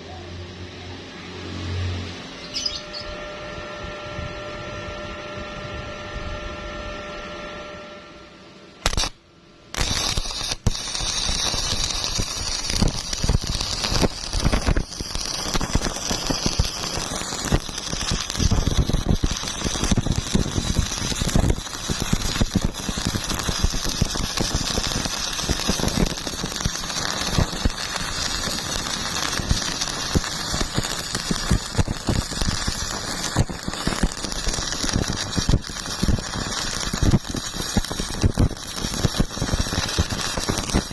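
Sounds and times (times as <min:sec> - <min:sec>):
welding arc crackling: 0:08.8 - 0:40.9.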